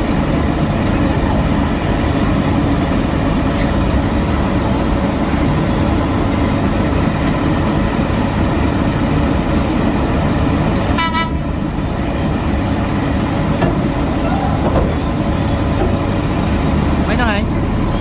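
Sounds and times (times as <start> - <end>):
diesel machinery rumbling: 0.0 - 18.0
short horn toot: 10.9 - 11.4.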